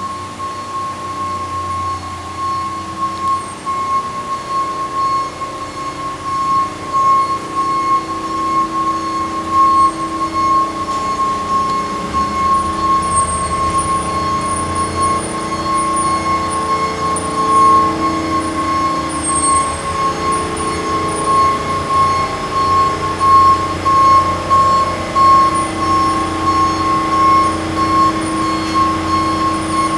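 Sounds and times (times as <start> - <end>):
backup alarm beeping: 0.0 - 29.9
truck engine idling: 8.9 - 29.9.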